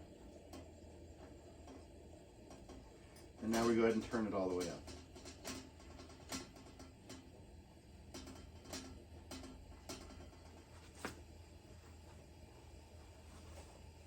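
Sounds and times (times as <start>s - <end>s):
lantern hum: 0.0s - 14.0s.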